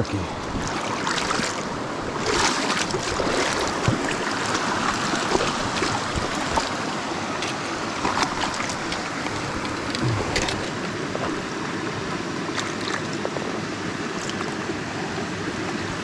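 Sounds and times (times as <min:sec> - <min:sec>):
stream rushing over rocks: 0:00.1 - 0:16.0
sharp splashes or knocks: 0:02.2 - 0:11.5.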